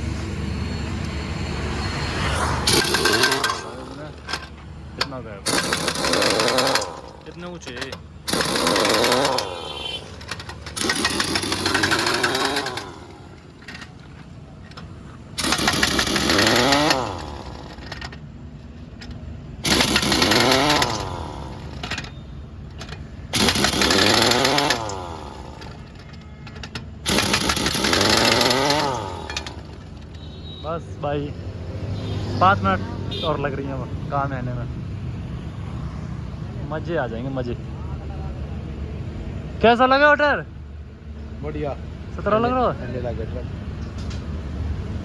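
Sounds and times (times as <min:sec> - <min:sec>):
pneumatic impact wrench: 0:00.8 - 0:30.6, 0:33.1 - 0:33.3.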